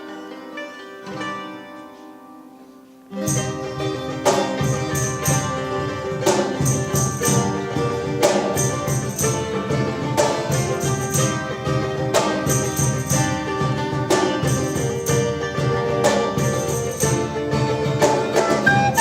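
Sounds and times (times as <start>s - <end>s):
folk-rock band instrumental: 0.0s - 19.0s
tambourine jingles: 3.2s - 17.6s.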